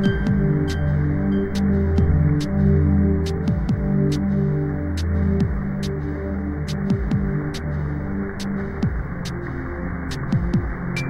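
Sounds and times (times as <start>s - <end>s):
deep kick drums: 0.0s - 0.8s, 2.0s - 2.6s, 3.3s - 4.3s, 5.0s - 6.0s, 6.7s - 7.6s, 8.4s - 9.4s, 10.2s - 11.0s
low synth chords: 0.0s - 11.0s.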